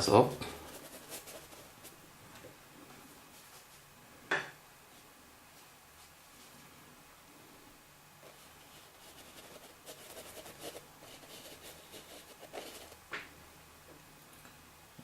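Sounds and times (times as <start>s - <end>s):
paintbrush strokes on canvas: 0.2s - 2.0s, 8.2s - 13.0s.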